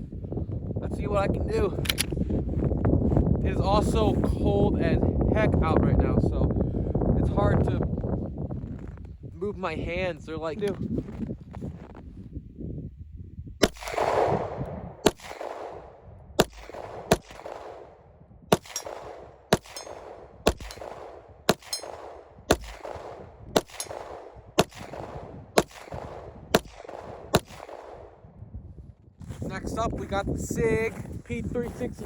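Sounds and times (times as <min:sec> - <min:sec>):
pistol shots: 0:13.6 - 0:28.2.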